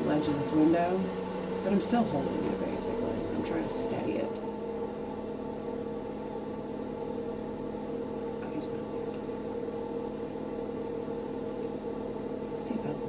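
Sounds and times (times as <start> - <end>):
machine hum: 0.0 - 13.0.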